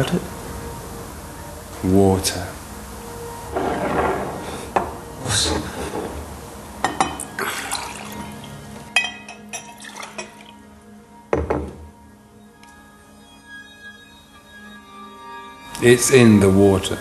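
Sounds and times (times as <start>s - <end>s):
light glass clinks: 6.8s - 7.4s, 8.9s - 10.5s
water pouring into a glass: 7.0s - 10.6s.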